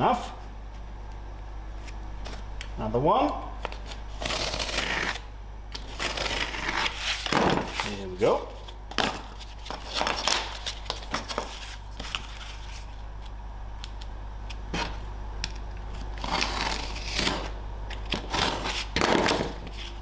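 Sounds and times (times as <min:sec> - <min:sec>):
blade scraping through cardboard: 0:03.8 - 0:13.0, 0:14.7 - 0:15.0, 0:15.9 - 0:20.0.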